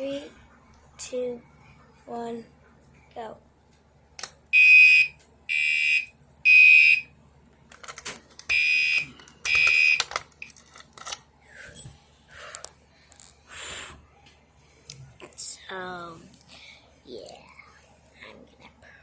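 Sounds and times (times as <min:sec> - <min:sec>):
fire alarm horn blasts: 0:04.5 - 0:07.1, 0:08.5 - 0:10.0
clicks and handling noises: 0:07.6 - 0:11.3.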